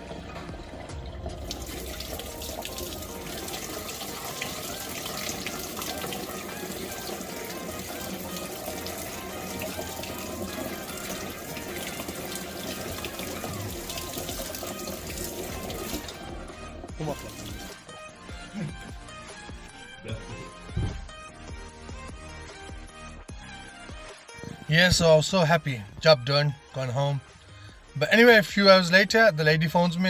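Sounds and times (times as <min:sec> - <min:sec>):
water running from a tap: 0:00.0 - 0:18.5
background music: 0:00.0 - 0:30.0.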